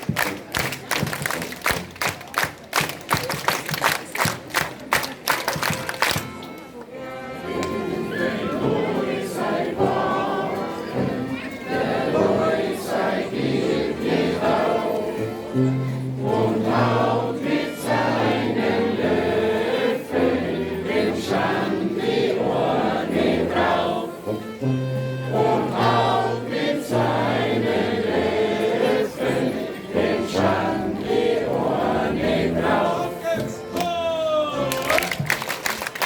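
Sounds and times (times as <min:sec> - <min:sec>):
held low accompanying notes: 0:05.4 - 0:36.0
group of people singing: 0:07.6 - 0:24.6, 0:25.2 - 0:33.6.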